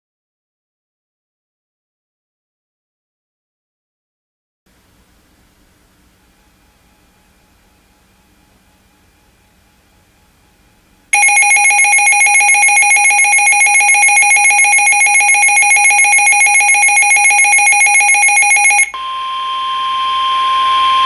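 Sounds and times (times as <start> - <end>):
shrill pulsing electronic alarm: 11.2 - 21.0
steady warning tone: 11.2 - 21.0.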